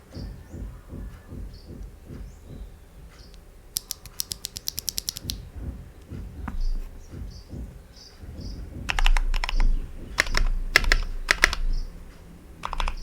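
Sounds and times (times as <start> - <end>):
birds chirping faintly: 0.0 - 13.0
sharp keyboard clicks: 1.1 - 7.7, 8.4 - 13.0
mechanical keyboard typing: 3.3 - 5.4, 8.8 - 11.8, 12.6 - 13.0
heavy thud: 5.2 - 12.0.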